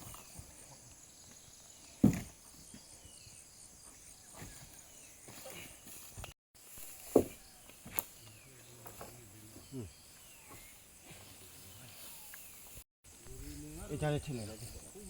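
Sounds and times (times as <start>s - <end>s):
heavy thud of wood struck: 2.0s - 2.3s.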